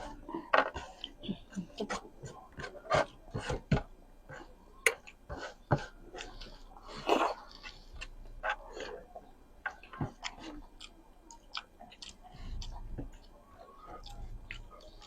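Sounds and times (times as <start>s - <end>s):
chewing and sucking: 9.7s - 15.0s.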